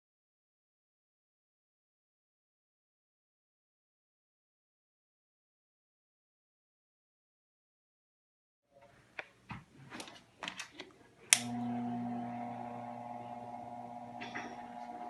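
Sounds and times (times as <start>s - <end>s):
fan switch click: 11.3s - 11.6s
fan motor humming: 11.3s - 15.0s.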